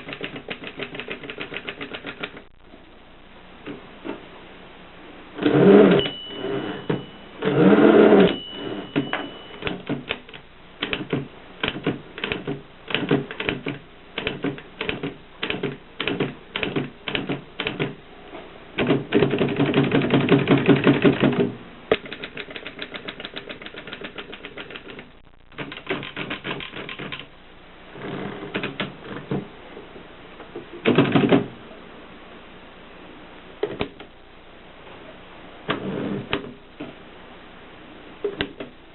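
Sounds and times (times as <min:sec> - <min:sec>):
typewriter typing: 0:00.0 - 0:02.5, 0:07.6 - 0:18.0, 0:18.8 - 0:27.3.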